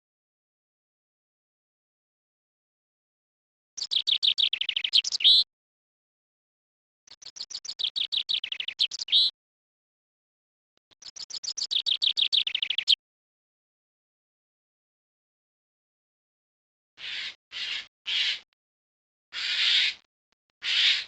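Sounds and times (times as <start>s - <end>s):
songbird singing: 3.8s - 5.5s, 7.1s - 9.3s, 11.0s - 13.0s.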